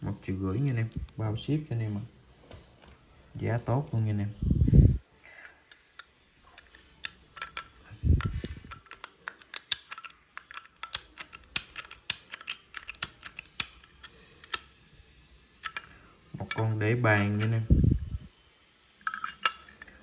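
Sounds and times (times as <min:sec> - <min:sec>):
metal lighters clicking and tapping: 0:08.7 - 0:14.7.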